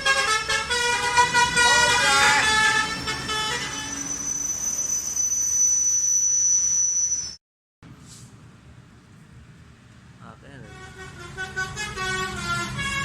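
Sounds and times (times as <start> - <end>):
musical air horns: 0.0 - 4.6, 10.6 - 13.0
engine and traffic noise: 0.0 - 5.6, 7.8 - 13.0
steady high whine: 3.7 - 7.4.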